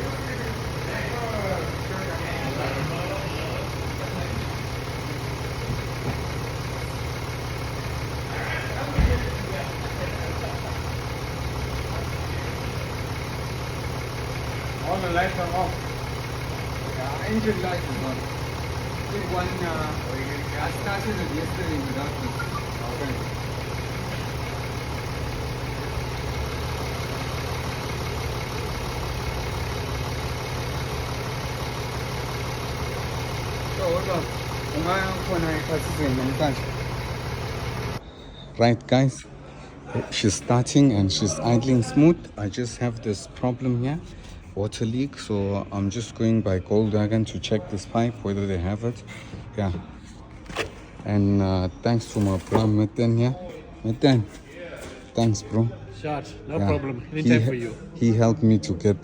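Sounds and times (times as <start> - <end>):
car engine idling: 0.0 - 38.4, 39.2 - 54.4
dull thump: 8.9 - 9.4.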